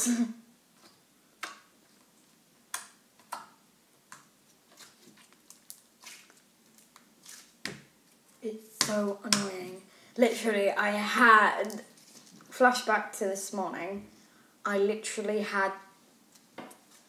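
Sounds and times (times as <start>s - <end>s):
slime squishing by hand: 0.8s - 8.2s.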